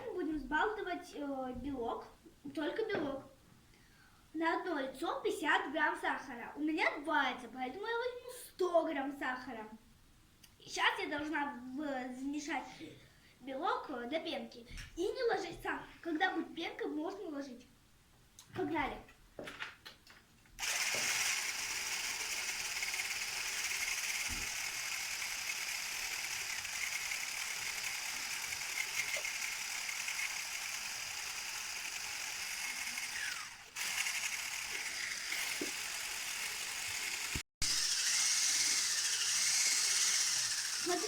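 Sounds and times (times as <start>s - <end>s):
electric blender whisking: 20.6s - 41.0s.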